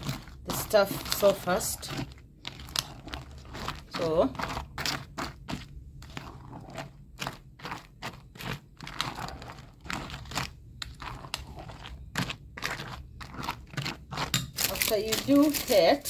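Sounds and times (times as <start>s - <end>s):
dry biscuits crunching: 0.0s - 16.0s.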